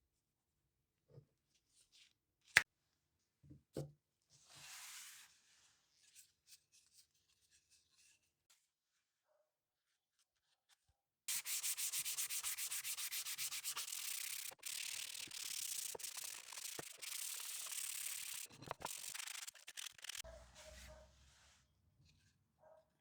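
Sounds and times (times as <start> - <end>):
sandpaper rubbing: 11.3 - 20.9.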